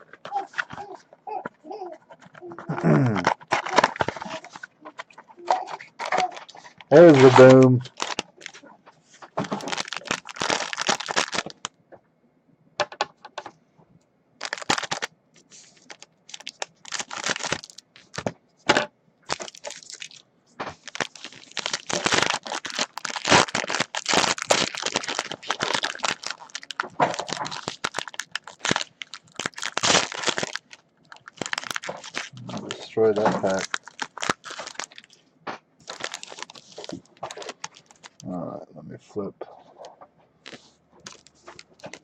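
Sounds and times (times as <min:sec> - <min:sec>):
plastic wrapper crinkling: 0:00.0 - 0:01.0, 0:02.0 - 0:11.7, 0:14.4 - 0:38.3, 0:39.7 - 0:42.0.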